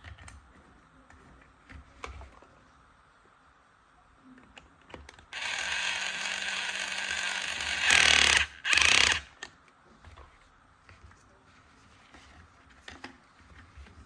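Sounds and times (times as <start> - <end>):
small tool motor whirring: 5.4 - 9.3.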